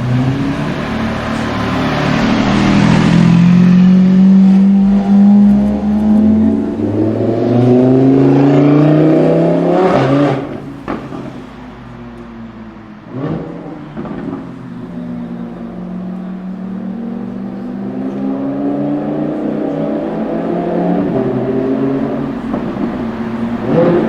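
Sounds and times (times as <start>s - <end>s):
engine accelerating hard: 0.0s - 11.6s, 13.0s - 24.0s
exhaust cracks: 9.4s - 11.7s, 21.0s - 24.0s.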